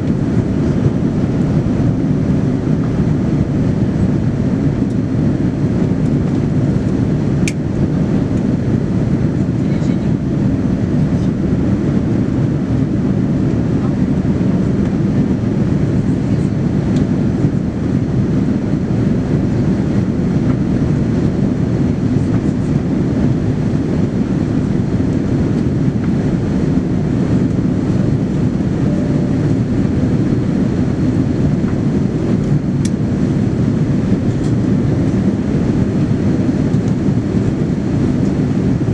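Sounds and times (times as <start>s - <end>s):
jet engines rumbling in cabin: 0.0s - 38.9s
air rushing: 22.8s - 38.9s.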